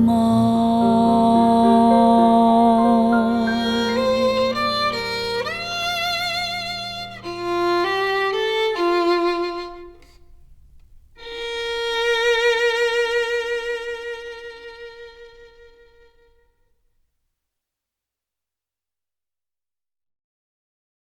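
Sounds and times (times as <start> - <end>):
violin melody with vibrato: 0.0 - 10.3, 11.2 - 16.4
soft musical accompaniment: 0.0 - 10.4.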